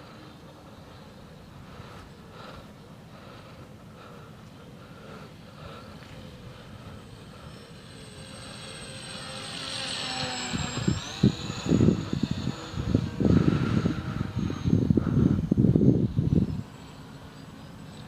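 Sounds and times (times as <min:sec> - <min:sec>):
rc plane electric motor whine: 0:04.8 - 0:18.0
wind buffeting microphone: 0:10.5 - 0:16.7.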